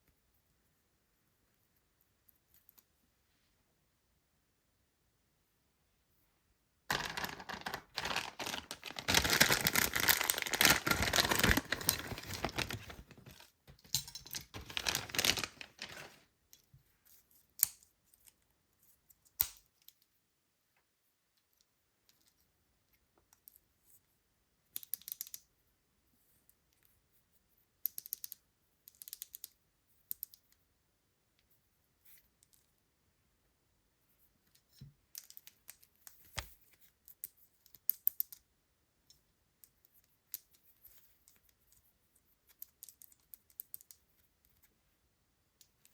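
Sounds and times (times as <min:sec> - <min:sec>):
wrapper crackling and tearing: 0:06.9 - 0:13.4, 0:14.5 - 0:16.2
small clicks and rustles: 0:06.9 - 0:20.2, 0:34.2 - 0:38.5.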